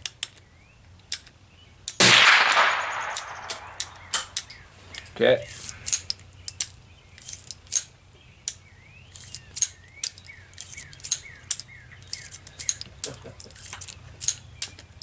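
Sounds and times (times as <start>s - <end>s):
bird chirping: 0.4s - 15.0s
revolver metallic clicks: 1.0s - 15.0s.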